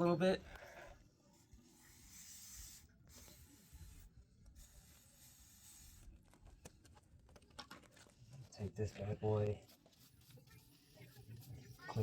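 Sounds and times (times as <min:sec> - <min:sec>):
light scratchy rubbing: 0:01.3 - 0:06.2.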